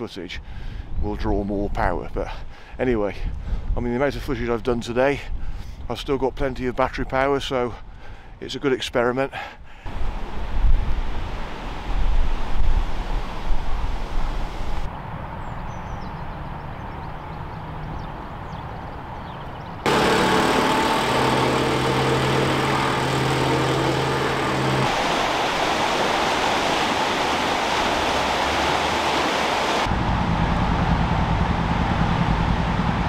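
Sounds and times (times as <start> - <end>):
wind rumble on microphone: 9.9 - 19.8
loud steady rushing noise: 19.9 - 33.0
low hum: 19.9 - 33.0.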